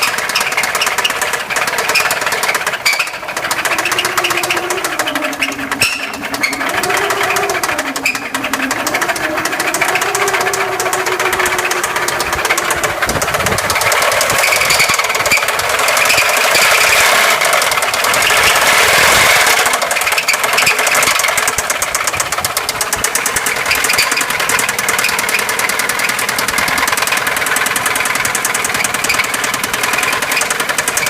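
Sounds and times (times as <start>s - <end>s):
car engine running: 0.0s - 31.0s
rapid ticking knock: 0.0s - 31.0s
wavering tone rising and falling: 3.8s - 15.5s.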